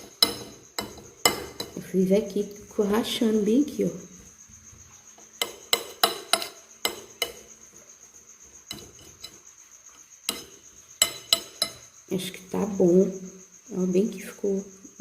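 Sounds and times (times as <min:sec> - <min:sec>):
spoon clinking against a plate: 0:00.0 - 0:01.8, 0:05.4 - 0:07.5, 0:08.7 - 0:09.4, 0:10.3 - 0:11.8.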